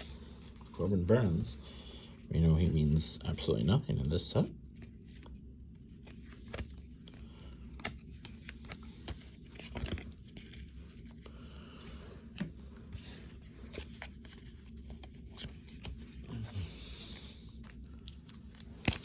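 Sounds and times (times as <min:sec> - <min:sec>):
soft clicks of cards: 0:06.0 - 0:11.4
wrapper crinkling and tearing: 0:18.1 - 0:19.0.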